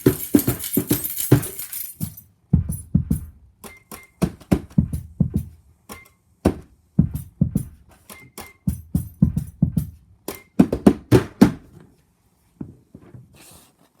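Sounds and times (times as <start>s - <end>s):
found-object percussion: 0.0s - 3.3s.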